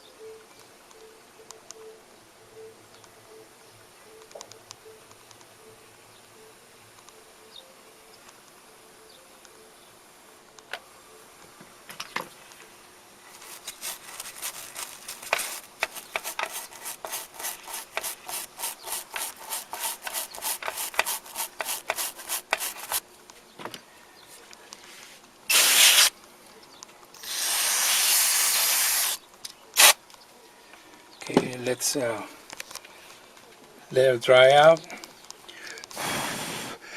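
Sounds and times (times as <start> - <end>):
fast scrubbing: 13.3 - 23.0
spray hisses: 25.5 - 26.1, 27.2 - 29.2, 29.8 - 30.0.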